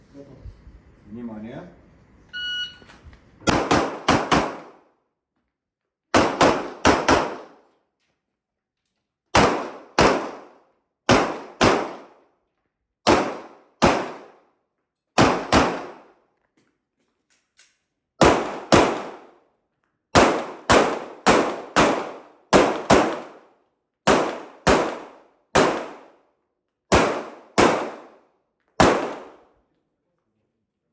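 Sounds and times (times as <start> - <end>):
shot timer beep: 2.4 - 2.8
pistol shots in quick pairs: 3.4 - 4.8, 6.1 - 7.6, 9.3 - 12.2, 13.0 - 14.4, 15.2 - 16.1, 18.2 - 19.4, 20.1 - 23.4, 24.0 - 26.2, 26.9 - 28.2, 28.8 - 29.5.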